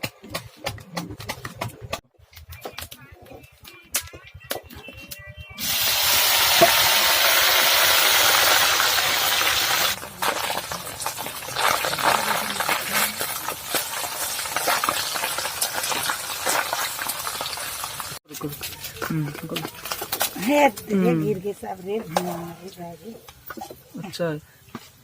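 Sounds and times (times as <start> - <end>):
food sizzling in hot oil: 5.6 - 18.8
oil popping: 5.6 - 20.4.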